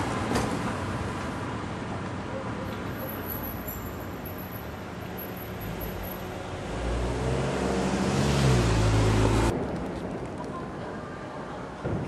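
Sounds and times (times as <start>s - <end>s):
hum of city traffic: 0.0s - 12.0s
vehicle engine approaching: 5.6s - 9.6s.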